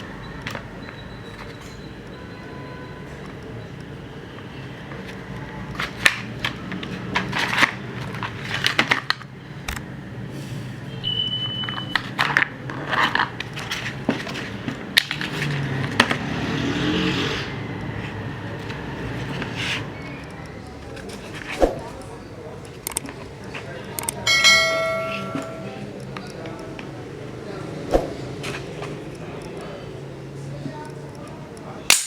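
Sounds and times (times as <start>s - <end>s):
plastic and metal parts handled: 4.9s - 9.3s, 11.6s - 16.2s
brief high steady tone: 24.3s - 25.9s.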